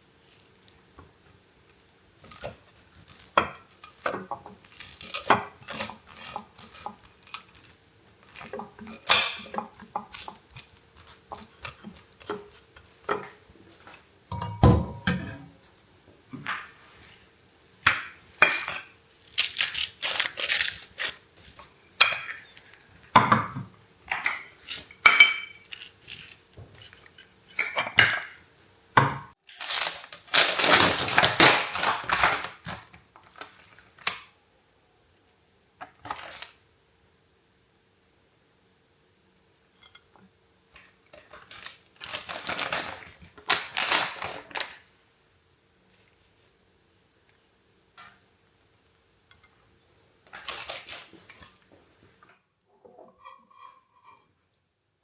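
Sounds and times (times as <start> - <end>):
dishes and cutlery clinking: 14.3 - 15.8, 21.5 - 29.3, 52.9 - 54.4.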